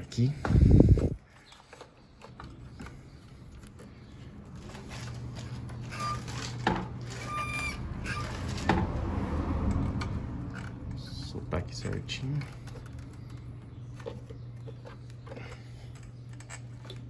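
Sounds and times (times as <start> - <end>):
low steady hum: 0.0 - 1.4
short high squeaks: 5.9 - 6.5, 7.1 - 8.7.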